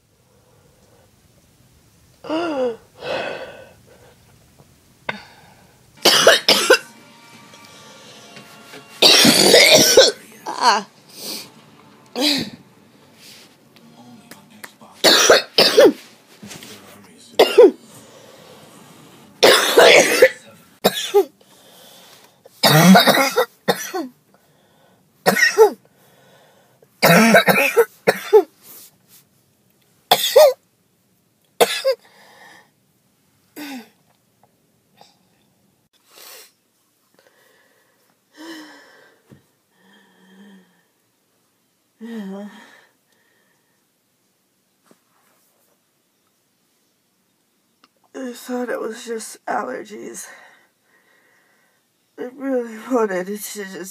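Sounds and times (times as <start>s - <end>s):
woman coughing: 6.0s - 6.9s, 9.0s - 10.9s, 15.0s - 16.0s, 17.4s - 17.8s, 19.4s - 21.3s, 22.6s - 24.1s, 25.3s - 25.8s, 27.0s - 28.5s, 30.1s - 30.6s, 31.6s - 32.0s.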